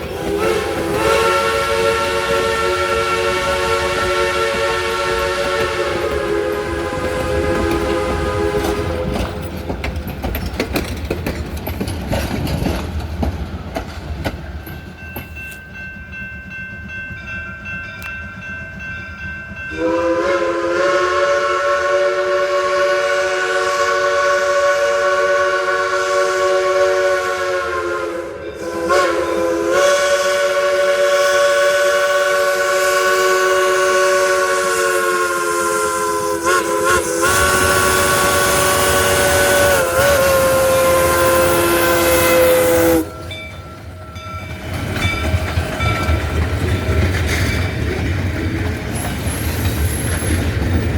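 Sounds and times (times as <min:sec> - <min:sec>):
steam whistle chord: 0:00.0 - 0:09.2, 0:19.6 - 0:44.3
train running noise: 0:00.0 - 0:50.9.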